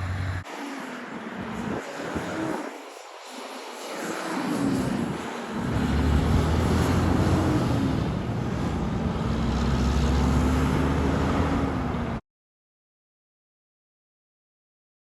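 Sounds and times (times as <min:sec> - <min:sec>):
vehicle engine running: 0:00.0 - 0:00.4
road noise: 0:00.0 - 0:12.2.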